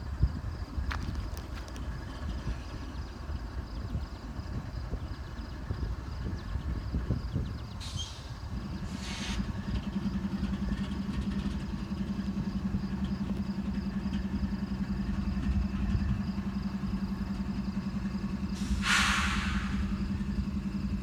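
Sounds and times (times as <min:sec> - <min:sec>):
train idling hum: 0:00.0 - 0:21.0
short hiss: 0:18.6 - 0:20.1.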